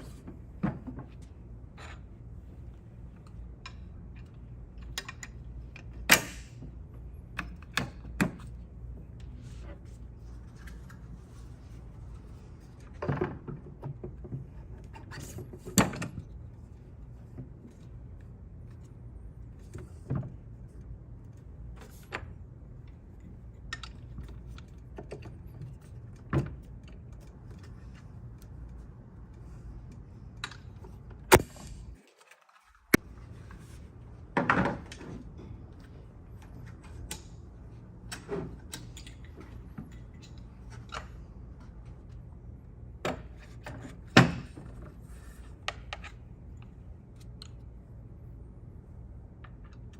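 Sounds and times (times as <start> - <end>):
steady low hum: 0.0 - 32.0.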